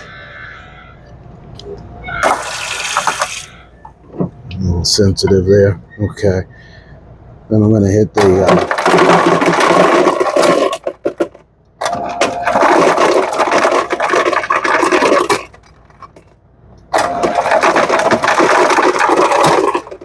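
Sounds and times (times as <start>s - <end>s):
ice cubes clattering into bucket: 2.2s - 3.5s, 8.2s - 16.3s, 17.0s - 20.0s.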